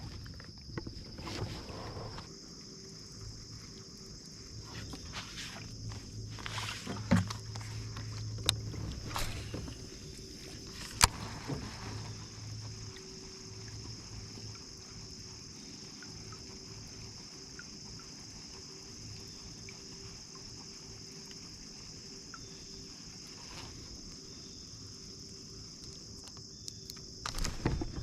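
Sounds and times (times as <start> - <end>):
high-pitched insect chorus: 0.0 - 28.0
faint small clicks: 25.8 - 27.6.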